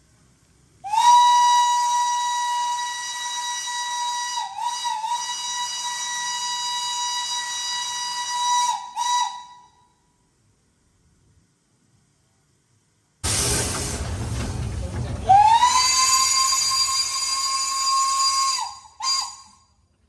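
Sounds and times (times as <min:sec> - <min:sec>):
steam locomotive whistle blast: 0:00.8 - 0:10.0, 0:15.2 - 0:19.8.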